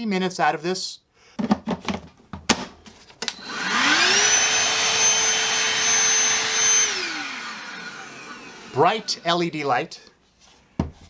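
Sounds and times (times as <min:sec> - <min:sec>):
vacuum switch clicks: 0:02.5 - 0:03.5
handheld vacuum motor whining: 0:03.2 - 0:09.3.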